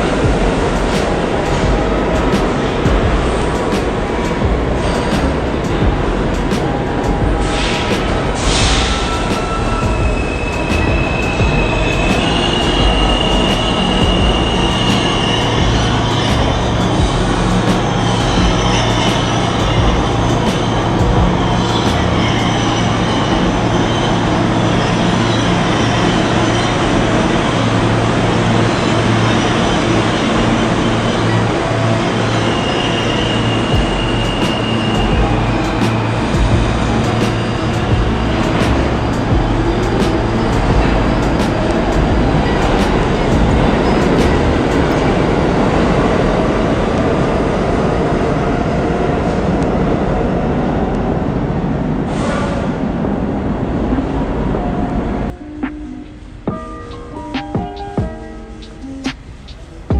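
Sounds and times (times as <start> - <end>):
low hum: 0.0 - 45.5
subway train rail noise: 0.0 - 59.9.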